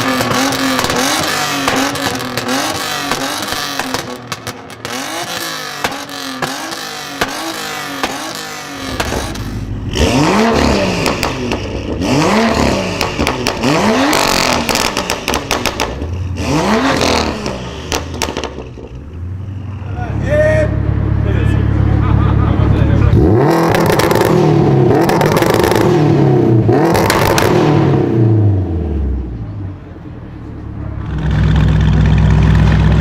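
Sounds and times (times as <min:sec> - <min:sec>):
exhaust crackles and pops: 0:00.0 - 0:09.6, 0:10.9 - 0:16.2, 0:16.9 - 0:19.2, 0:26.8 - 0:27.6
car engine revving: 0:00.0 - 0:33.0.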